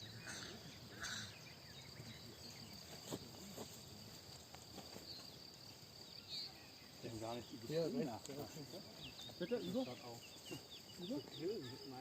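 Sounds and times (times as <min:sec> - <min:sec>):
bird chirps: 0:00.0 - 0:03.2, 0:08.6 - 0:12.0
insects chirring: 0:00.0 - 0:12.0.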